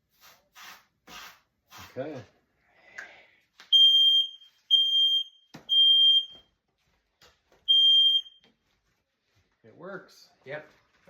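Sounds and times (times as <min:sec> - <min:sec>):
smoke detector beeping: 0:03.7 - 0:06.5, 0:07.7 - 0:08.5.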